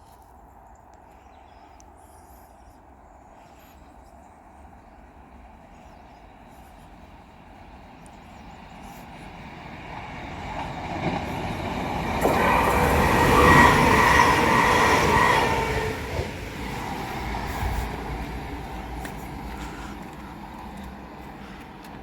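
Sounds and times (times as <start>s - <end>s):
diesel train passing: 4.6s - 22.0s.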